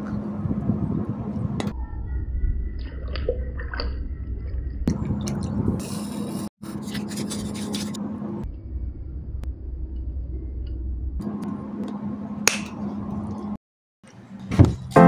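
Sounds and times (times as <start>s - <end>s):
liquid pouring and splashing: 2.8s - 5.7s.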